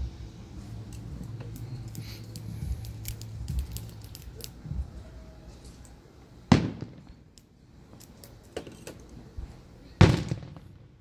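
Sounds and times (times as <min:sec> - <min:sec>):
fireworks bangs: 0:06.5 - 0:07.4, 0:10.0 - 0:11.0.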